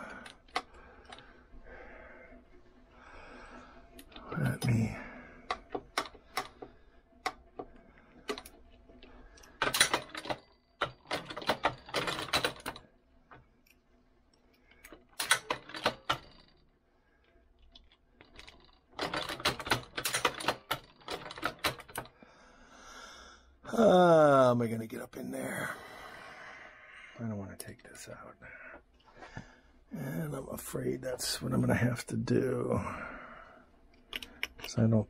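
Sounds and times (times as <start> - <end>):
metal press parts rattling: 5.5 - 12.8, 14.7 - 16.6, 17.6 - 22.1.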